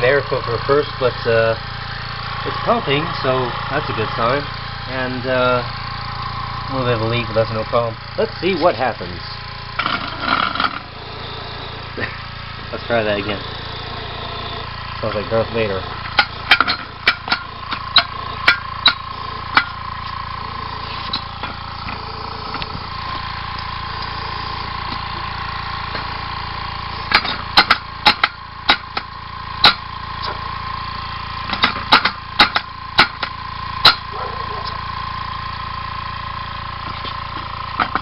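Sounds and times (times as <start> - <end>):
airbrush compressor running: 0.0 - 38.0
engine sharp knocks: 7.4 - 30.5, 31.4 - 34.8, 36.8 - 38.0.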